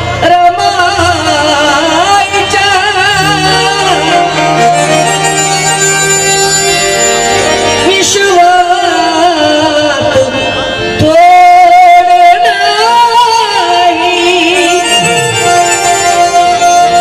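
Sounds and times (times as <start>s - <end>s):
person singing devotional song: 0.0s - 4.8s, 7.8s - 17.0s
harmonium: 0.0s - 17.0s.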